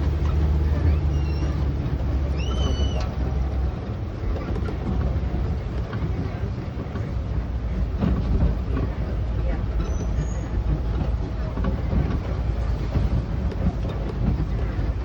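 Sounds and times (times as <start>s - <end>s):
vehicle engine rumble: 0.0s - 15.0s
short high squeals: 0.8s - 1.7s, 2.3s - 3.2s.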